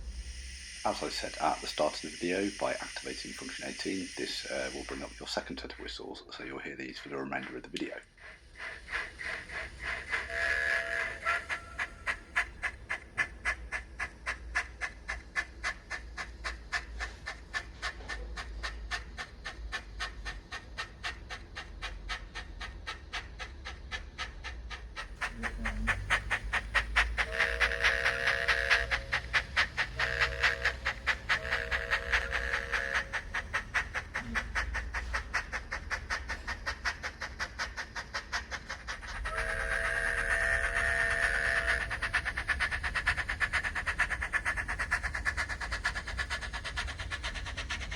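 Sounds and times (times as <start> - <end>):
model steam locomotive chuffing: 0.0 - 47.9
locomotive whistle blasts: 10.2 - 11.9, 27.2 - 33.3, 39.2 - 42.0.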